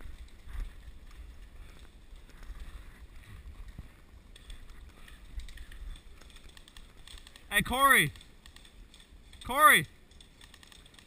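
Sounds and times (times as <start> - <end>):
wind rumble on microphone: 0.0 - 6.4
faint rustles and ticks: 0.0 - 11.0.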